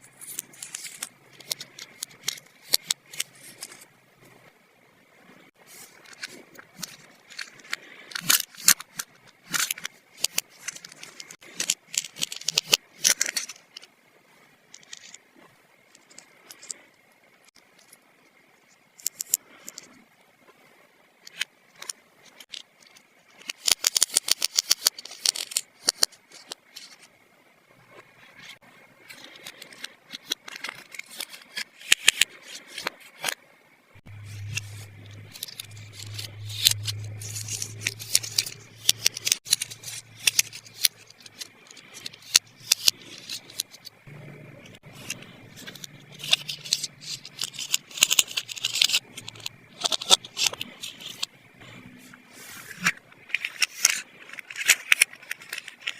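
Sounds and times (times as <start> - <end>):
plastic toy pieces clicking: 0.3 - 3.8, 6.1 - 13.9, 23.4 - 27.1, 34.2 - 43.9, 44.7 - 51.3, 52.8 - 55.9
low steady hum: 33.5 - 55.9.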